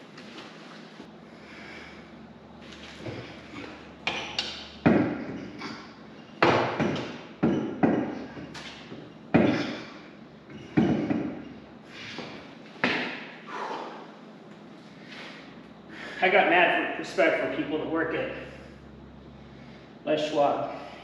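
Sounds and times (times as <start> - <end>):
sharp knocks and thuds: 4.8 - 5.5.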